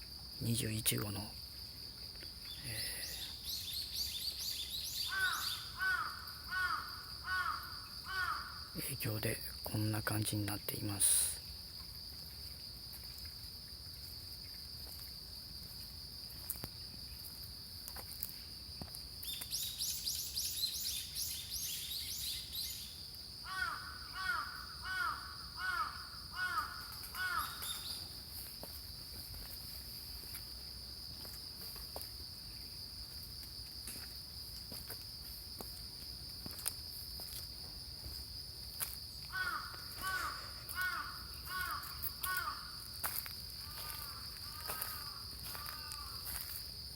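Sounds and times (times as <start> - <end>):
small birds chirping: 2.1 - 5.8, 19.2 - 23.0, 27.0 - 28.2
crows cawing: 5.1 - 8.7, 23.4 - 27.8, 39.3 - 42.9, 43.6 - 46.4
high-pitched insect drone: 39.3 - 46.6.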